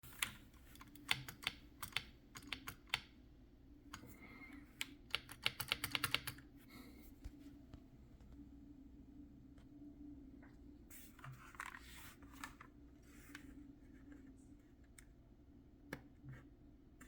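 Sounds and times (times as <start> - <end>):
mechanical keyboard keystrokes: 0.1 - 3.1, 4.8 - 6.4.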